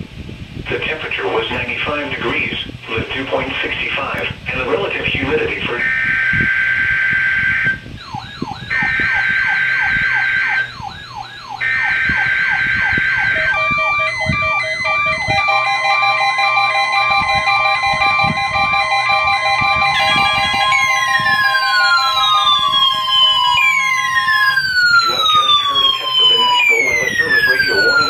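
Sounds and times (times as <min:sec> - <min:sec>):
radios beeping: 0:00.9 - 0:28.0
buzzy digital data bursts: 0:05.8 - 0:28.0
falling warble alarm: 0:05.8 - 0:28.0.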